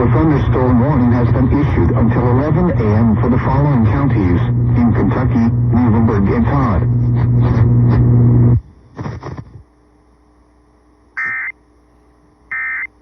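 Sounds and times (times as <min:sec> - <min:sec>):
loud steady hum: 0:00.0 - 0:13.0
buzzing data bursts: 0:11.2 - 0:11.6, 0:12.5 - 0:13.0.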